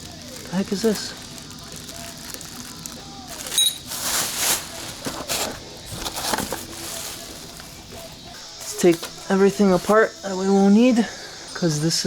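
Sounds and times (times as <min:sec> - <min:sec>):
metal parts scraping and rattling: 0:03.3 - 0:10.0
metal clink: 0:03.5 - 0:04.0.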